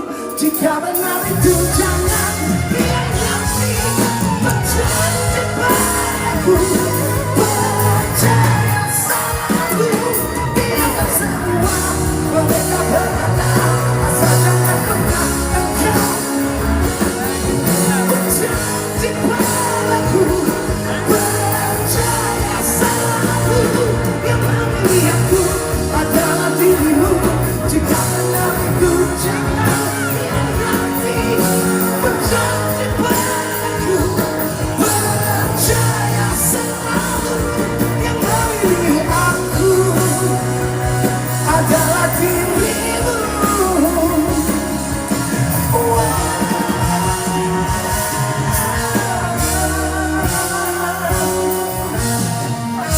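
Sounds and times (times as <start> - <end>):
band playing pop-rock: 0.0 - 52.9
lead singer singing: 0.0 - 52.9.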